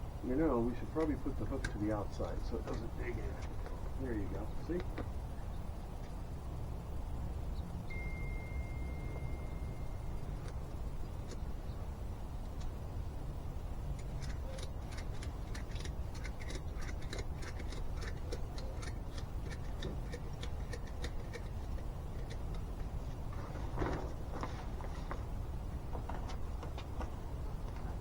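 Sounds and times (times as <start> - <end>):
handling rustle: 19.6 - 28.0.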